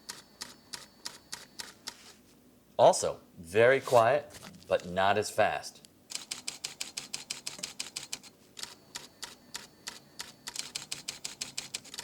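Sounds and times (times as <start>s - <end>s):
camera shutter clicking: 6.1s - 11.6s.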